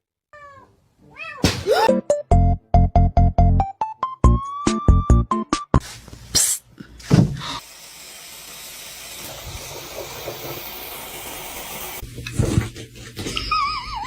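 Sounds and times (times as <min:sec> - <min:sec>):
steady hiss: 0:07.4 - 0:12.0.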